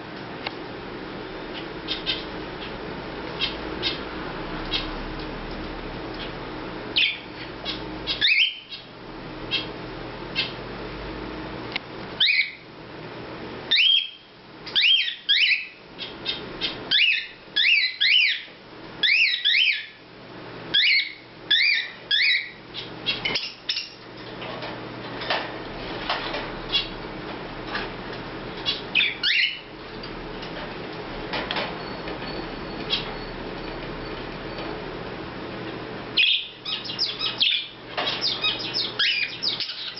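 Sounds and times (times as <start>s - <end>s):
cockatiel chirping: 1.9s - 2.7s, 3.4s - 4.0s, 7.0s - 8.9s, 9.5s - 9.7s, 12.2s - 12.6s, 13.7s - 19.9s, 20.8s - 24.0s, 28.6s - 29.7s, 36.2s - 39.9s.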